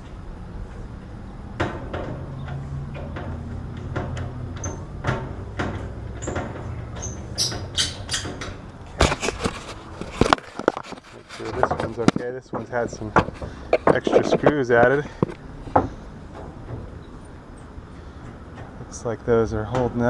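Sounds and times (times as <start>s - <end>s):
steady low hum: 0.0s - 20.0s
sheet metal panel clicks and rattles: 1.5s - 9.4s
hard knocks: 1.5s - 9.5s, 11.5s - 16.9s.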